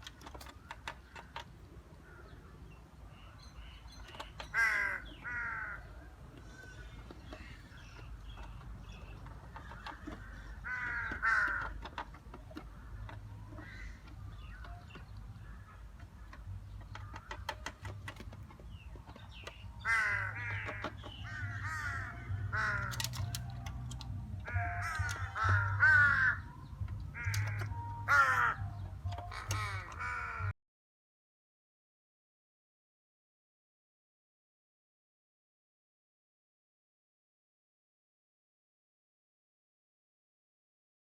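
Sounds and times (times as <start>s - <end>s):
crows cawing: 4.4s - 6.7s, 9.5s - 17.7s, 19.4s - 23.4s, 24.4s - 30.5s.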